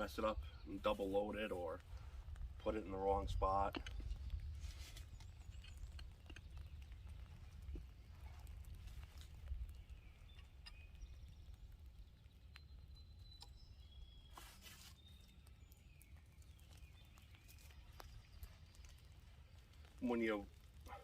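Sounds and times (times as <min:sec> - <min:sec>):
low wind rumble: 0:00.0 - 0:14.3.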